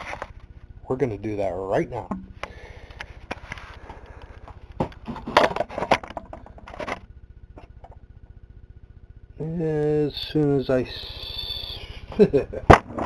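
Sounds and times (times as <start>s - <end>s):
objects rustling and clattering: 0.0s - 0.5s, 3.0s - 8.0s
faint steady hum: 0.0s - 13.0s.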